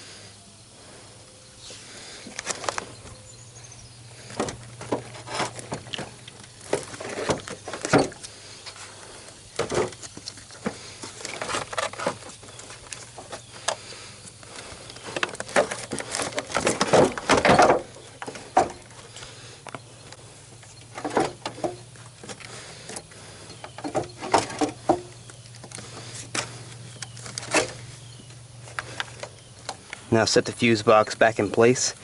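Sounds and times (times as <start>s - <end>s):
plastic battery case knocking and scraping: 14.9s - 18.8s.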